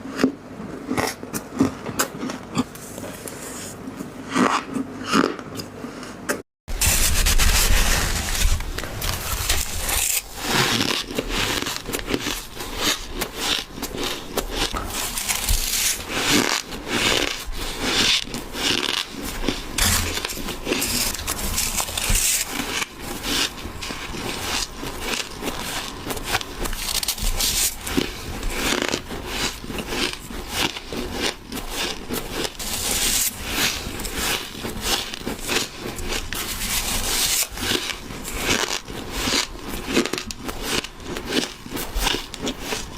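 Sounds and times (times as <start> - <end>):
ice being chewed: 40.7 - 42.9.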